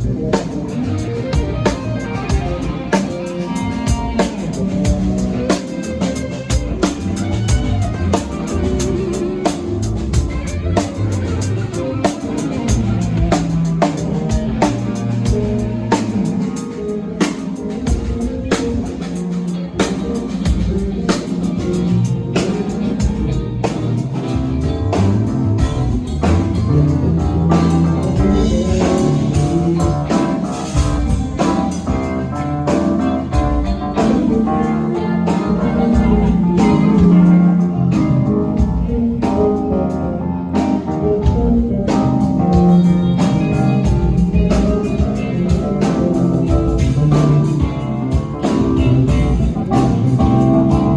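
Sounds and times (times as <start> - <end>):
drum kit: 0.0 - 50.9
electric guitar: 0.0 - 50.9.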